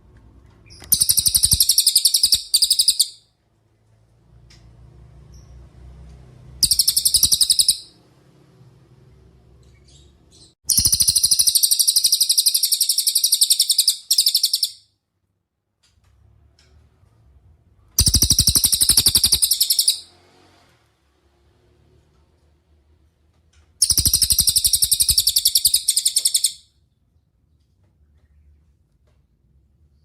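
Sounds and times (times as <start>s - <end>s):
songbird high-pitched trills: 6.6s - 7.9s, 18.0s - 20.0s, 23.8s - 26.6s.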